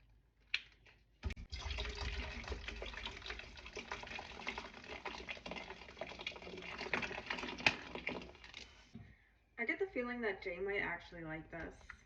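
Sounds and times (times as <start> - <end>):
liquid stirred in a bowl: 1.4 - 9.0.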